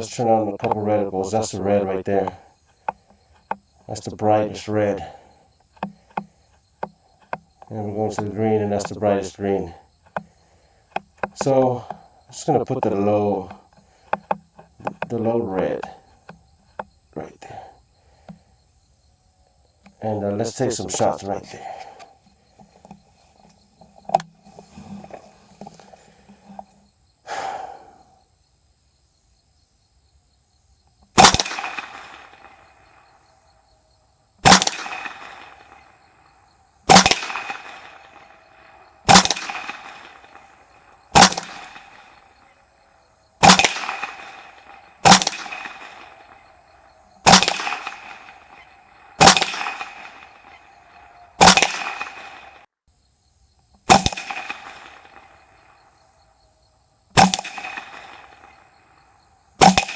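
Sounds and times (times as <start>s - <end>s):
rifle shots with echo: 31.2s - 33.0s, 34.4s - 36.0s, 36.9s - 42.6s, 43.4s - 52.6s, 53.9s - 55.6s, 57.2s - 59.0s, 59.6s - 59.9s.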